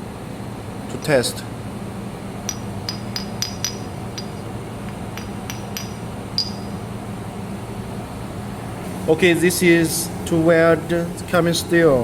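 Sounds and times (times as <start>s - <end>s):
low electrical hum: 0.0s - 12.0s
metallic clinks of steel pieces: 2.5s - 6.8s.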